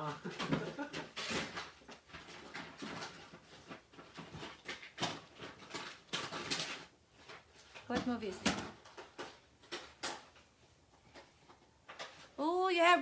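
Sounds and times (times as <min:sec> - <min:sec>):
packaging rustling and ripping: 0:00.8 - 0:10.4.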